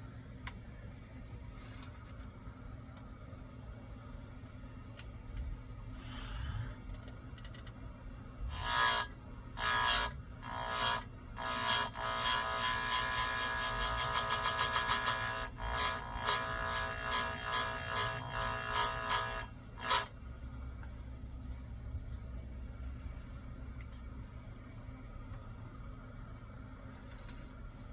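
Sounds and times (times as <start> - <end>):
file rasping on chainsaw chain: 8.5 - 20.1.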